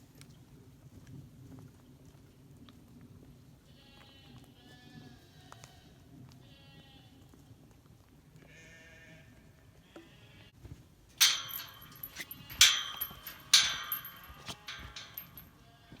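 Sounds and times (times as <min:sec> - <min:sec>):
faint animal bleating: 0:08.5 - 0:10.5.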